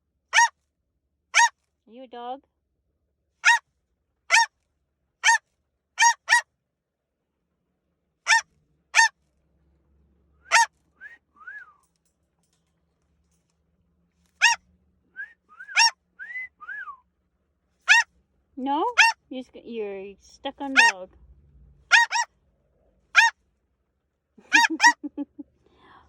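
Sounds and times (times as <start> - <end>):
parrot calling: 0.3 - 0.5, 3.4 - 3.6, 4.3 - 4.5, 5.2 - 5.4, 6.0 - 6.5, 8.2 - 9.2, 10.4 - 10.7, 14.3 - 14.6, 15.6 - 16.6, 17.8 - 18.1, 18.9 - 19.2, 20.6 - 21.0, 21.9 - 22.3, 23.1 - 23.4, 24.4 - 25.4
parrot whistles: 10.4 - 11.8, 15.2 - 17.0.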